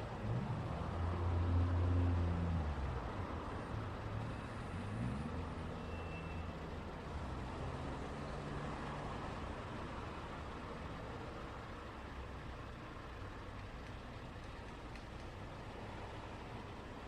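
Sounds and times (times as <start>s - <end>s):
heavy vehicle engine hum: 0.0s - 17.0s
tyre and road noise: 0.0s - 17.0s.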